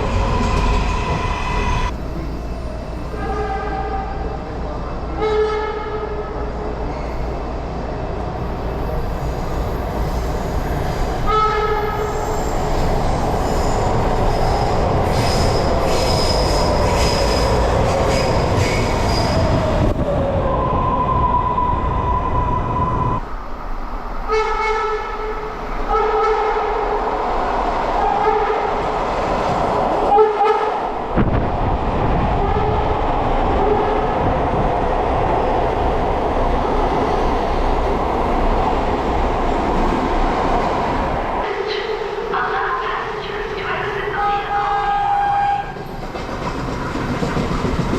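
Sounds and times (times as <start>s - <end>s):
train running noise: 0.0s - 47.9s
train horn blasts: 3.2s - 4.3s, 5.2s - 6.2s, 24.3s - 26.8s, 44.2s - 45.8s.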